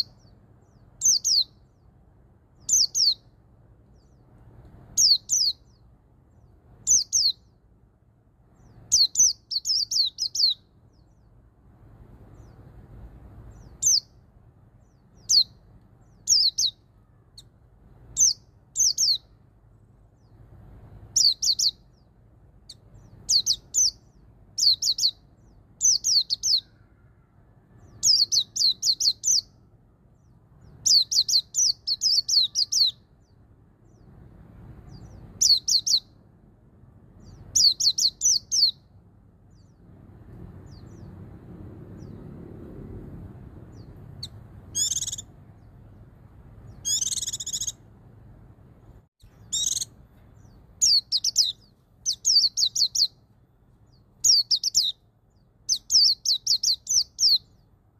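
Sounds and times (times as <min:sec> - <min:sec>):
buzzy trilled bird calls: 0:00.0 - 0:01.8, 0:02.6 - 0:03.3, 0:05.0 - 0:07.5, 0:08.6 - 0:11.2, 0:13.5 - 0:14.2, 0:14.8 - 0:17.5, 0:18.1 - 0:19.4, 0:21.1 - 0:26.9, 0:27.8 - 0:29.6, 0:30.6 - 0:34.0, 0:34.9 - 0:36.1, 0:37.2 - 0:38.9, 0:43.7 - 0:45.8, 0:46.7 - 0:47.9, 0:49.2 - 0:53.2, 0:53.9 - 0:57.7
faint low rumble: 0:00.0 - 0:56.0
bird singing high descending notes: 0:43.7 - 0:45.8, 0:46.7 - 0:47.8, 0:49.2 - 0:53.2.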